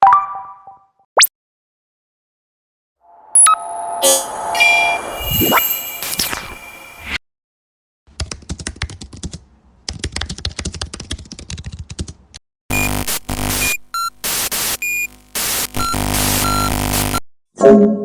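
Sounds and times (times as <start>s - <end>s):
short beeps: 3.4s - 7.0s
static glitch hiss: 12.7s - 17.2s.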